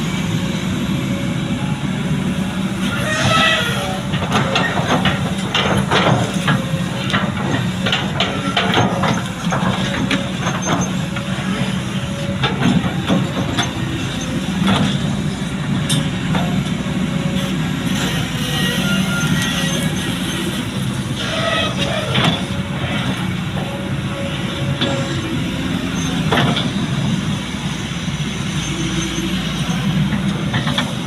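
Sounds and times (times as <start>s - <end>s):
excavator engine running: 0.0s - 31.0s
metal knocks and clanks: 3.1s - 11.4s, 12.4s - 15.1s, 26.2s - 26.9s.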